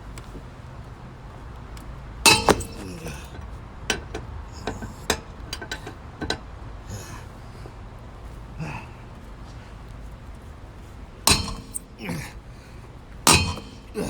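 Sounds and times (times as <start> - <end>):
loud metal tool clank: 2.3 - 3.2, 11.3 - 12.2, 13.3 - 14.0
metal tools clinking: 2.3 - 6.4, 11.3 - 12.2, 13.3 - 14.0.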